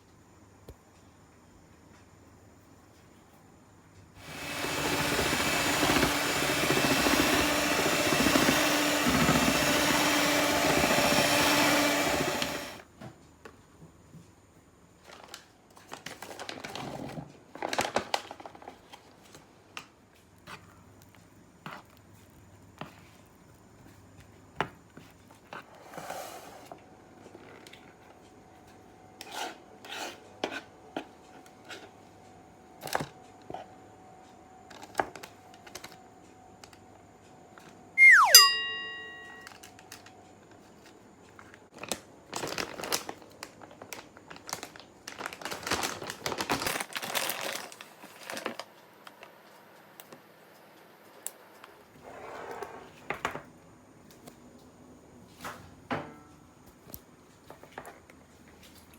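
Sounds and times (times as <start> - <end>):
ringing metal clang: 38.1 - 39.5
crinkling and tearing: 43.8 - 48.6.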